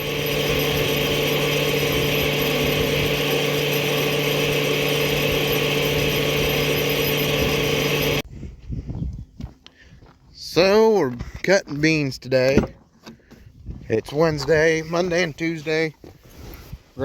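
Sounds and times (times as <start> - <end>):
combine harvester running: 0.0 - 8.2.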